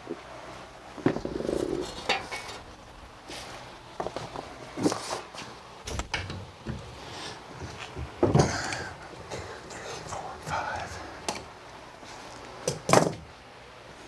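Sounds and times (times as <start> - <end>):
metal tools clanking: 1.5 - 2.9.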